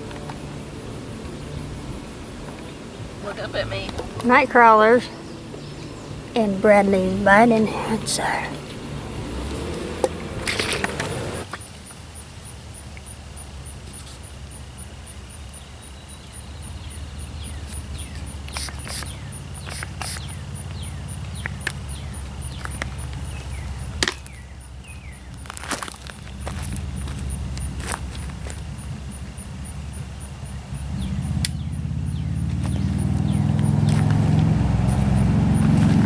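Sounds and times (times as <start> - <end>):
steady low rumble: 0.0 - 11.5, 20.2 - 36.0
descending bird chirps: 28.7 - 36.0
sharp clicks: 31.4 - 31.7.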